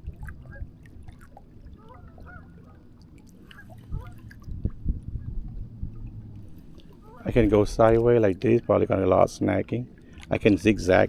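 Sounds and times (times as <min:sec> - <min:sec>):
steady low rumble: 0:00.0 - 0:11.0
geese honking: 0:01.8 - 0:02.8.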